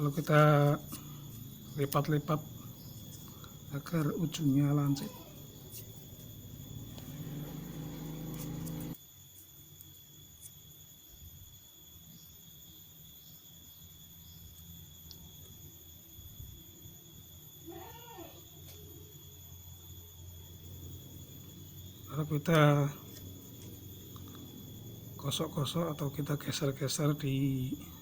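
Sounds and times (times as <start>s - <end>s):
low hum: 0.0s - 9.0s, 20.6s - 28.0s
faint high-pitched whine: 0.0s - 28.0s.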